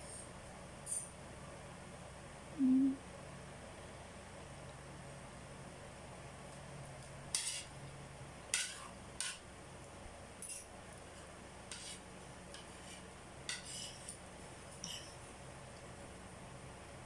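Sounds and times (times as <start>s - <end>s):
cutlery clinking on a dish: 8.5s - 9.4s, 11.7s - 14.2s.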